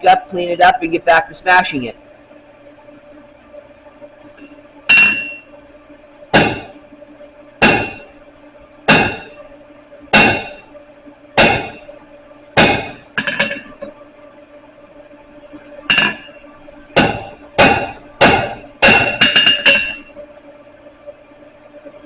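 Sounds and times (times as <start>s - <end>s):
hammer striking steel on anvil: 4.9s - 5.4s, 6.4s - 6.7s, 7.6s - 8.1s, 8.9s - 9.3s, 10.2s - 10.6s, 11.4s - 11.9s, 12.6s - 13.8s, 15.9s - 16.4s, 17.0s - 20.1s.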